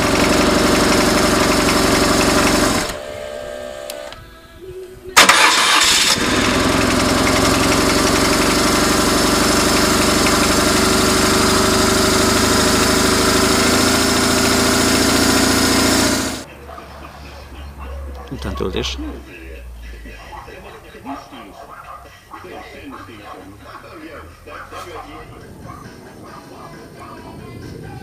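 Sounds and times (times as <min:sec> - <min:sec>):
motorcycle engine running: 0:00.0 - 0:03.9, 0:05.8 - 0:16.4.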